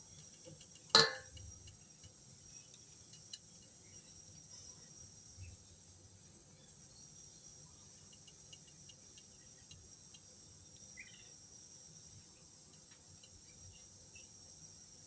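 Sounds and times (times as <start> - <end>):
faint ticks: 0.0 - 5.5, 7.8 - 11.4, 12.1 - 14.3
insects chirring: 0.0 - 15.0.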